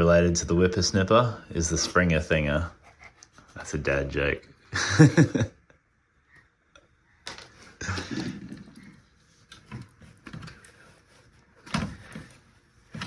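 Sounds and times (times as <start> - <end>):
knocking and scraping of parts: 7.2 - 13.0.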